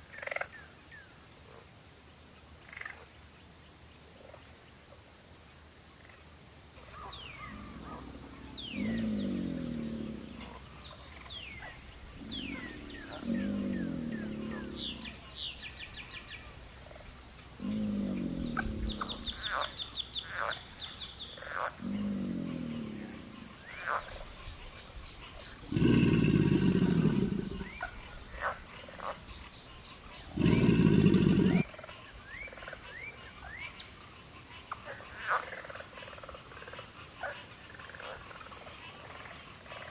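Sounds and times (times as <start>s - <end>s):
crickets chirping: 0.0s - 39.9s
low falling animal call: 7.0s - 10.6s, 12.2s - 15.2s, 17.6s - 19.5s, 21.8s - 23.5s, 25.7s - 27.8s, 30.4s - 31.6s.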